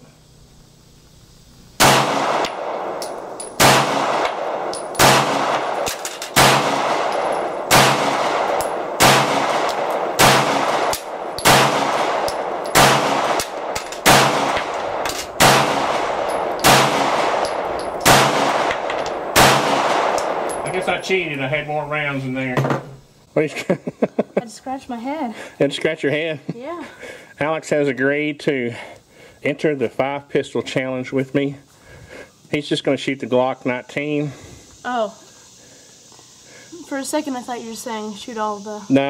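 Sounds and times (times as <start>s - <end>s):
pistol shots with ringing echo: 1.8s - 21.0s.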